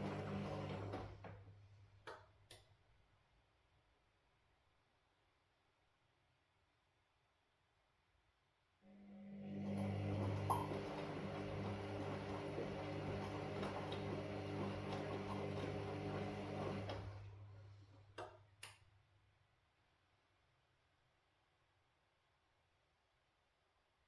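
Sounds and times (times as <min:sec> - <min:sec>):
washing machine drum turning: 0:10.1 - 0:17.2.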